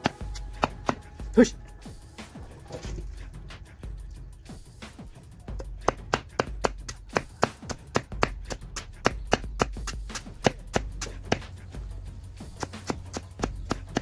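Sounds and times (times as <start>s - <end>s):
blade chopping banana stem: 0.0s - 1.2s, 5.6s - 11.7s, 12.4s - 14.0s.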